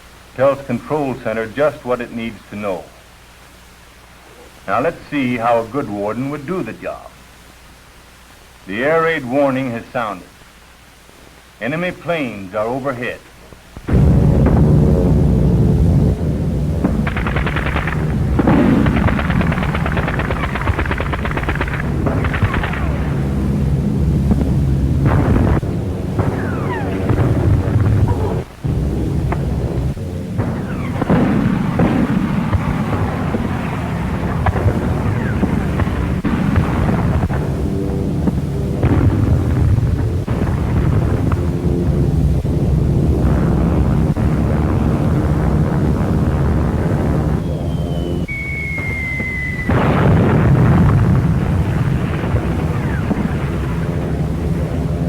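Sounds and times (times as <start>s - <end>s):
anti-aircraft gunfire: 13.8s - 55.0s
explosions: 13.8s - 55.0s
low drone of aircraft engines: 13.8s - 55.0s
descending whistles: 16.8s - 23.7s, 26.2s - 28.6s, 30.4s - 31.9s, 47.3s - 50.6s
falling bomb whistle: 25.1s - 28.5s, 47.4s - 50.8s.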